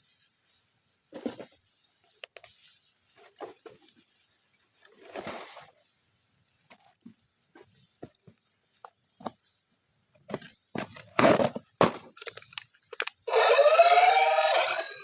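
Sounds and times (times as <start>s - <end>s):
toys and packaging rustling: 1.2s - 1.5s, 3.2s - 4.0s, 10.3s - 15.0s.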